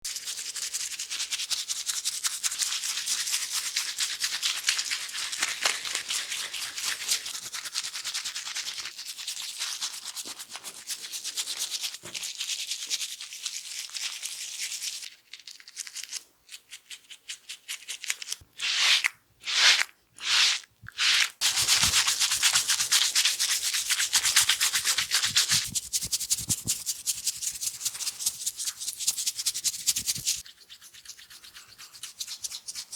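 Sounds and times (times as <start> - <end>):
fingers scrubbing lathered hair: 18.6 - 32.9.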